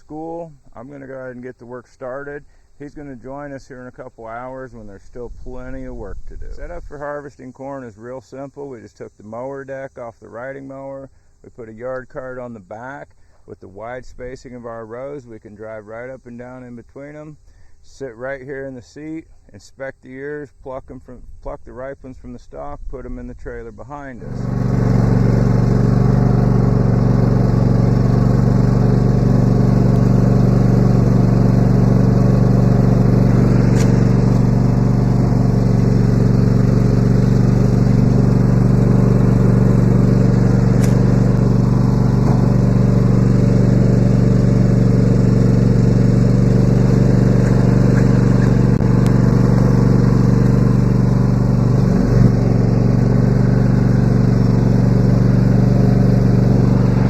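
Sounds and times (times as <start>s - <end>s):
riding lawn mower engine running: 0.0s - 7.0s, 24.0s - 57.0s.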